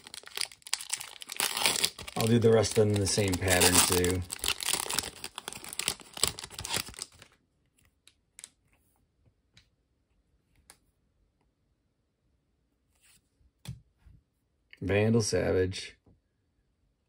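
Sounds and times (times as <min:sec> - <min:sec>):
foil wrapper crinkling: 0:00.0 - 0:07.4.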